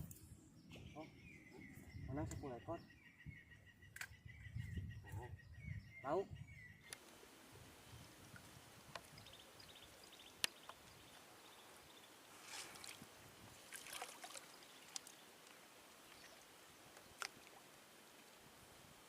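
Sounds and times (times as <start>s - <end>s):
faint steady hiss: 6.8s - 19.0s
high splashy rustles: 12.3s - 15.2s.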